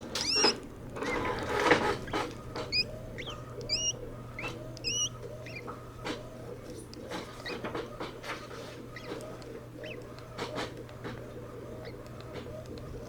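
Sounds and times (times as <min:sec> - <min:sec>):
hamster breathing with squeaks: 0:08.3 - 0:10.0.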